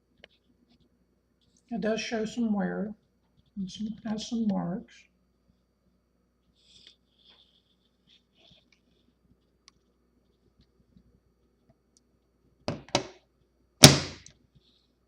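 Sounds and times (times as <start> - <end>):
knocks on typewriter case: 13.8 - 14.2
sharp thump of hollow case: 13.8 - 14.2.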